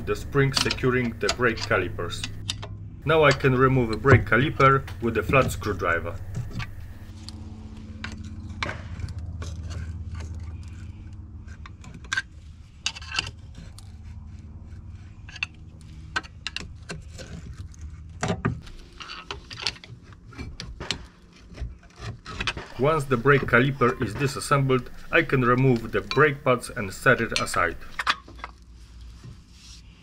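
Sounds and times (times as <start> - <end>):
screwdriver prying metal: 0.0 - 7.1
steady low hum: 0.0 - 16.4, 22.7 - 28.1.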